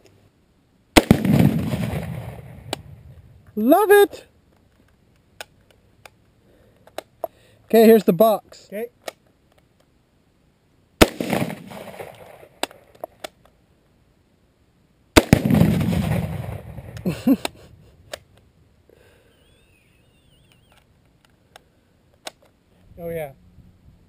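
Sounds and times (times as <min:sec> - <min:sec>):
rifle shots echoing: 0:01.0 - 0:03.1, 0:11.0 - 0:12.8, 0:15.2 - 0:17.4
explosion with low rumble: 0:01.0 - 0:03.5, 0:15.2 - 0:17.2.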